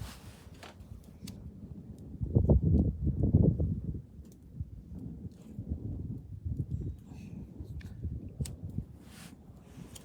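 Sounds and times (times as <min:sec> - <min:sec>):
wind buffeting microphone: 0:00.0 - 0:10.0.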